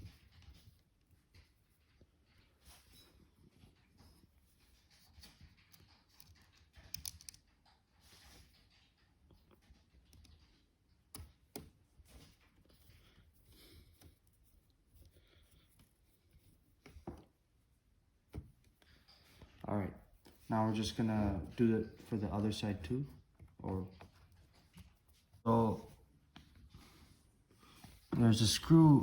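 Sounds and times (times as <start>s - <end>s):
screwdriver and parts clicking: 6.9s - 7.4s.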